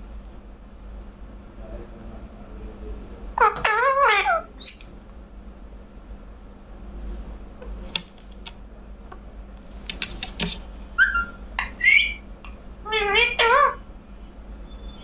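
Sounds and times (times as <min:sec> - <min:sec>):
parakeet chirping calls: 0:03.4 - 0:05.0, 0:10.2 - 0:13.9
parakeet clicks: 0:07.9 - 0:08.6, 0:09.8 - 0:10.6.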